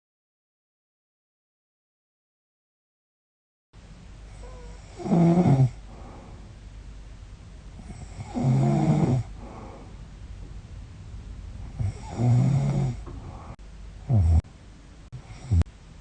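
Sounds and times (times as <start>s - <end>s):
quiet breathing: 4.2s - 6.6s, 7.7s - 10.2s, 11.5s - 14.4s, 15.1s - 15.8s
woman snoring: 4.3s - 6.1s, 7.8s - 9.8s, 11.7s - 13.0s, 14.0s - 14.5s, 15.2s - 15.7s.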